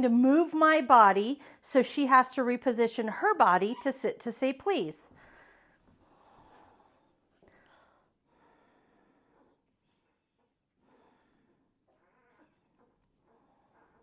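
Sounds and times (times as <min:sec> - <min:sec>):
faint short breaths: 0:05.1 - 0:09.5.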